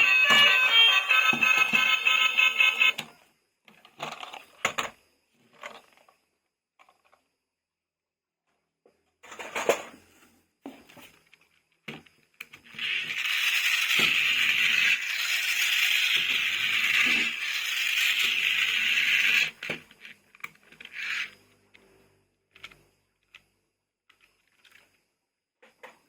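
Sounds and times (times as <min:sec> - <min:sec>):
toys clicking and knocking: 0:00.0 - 0:05.0, 0:11.9 - 0:21.8.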